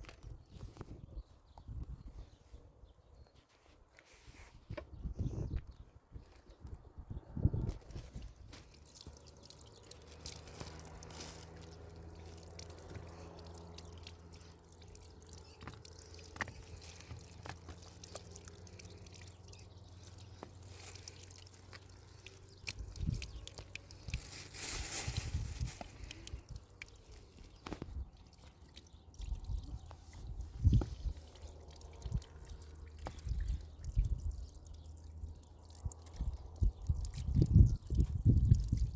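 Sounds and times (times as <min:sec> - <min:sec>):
splashing or rustling: 0:07.8 - 0:37.4
water dripping: 0:08.1 - 0:38.9.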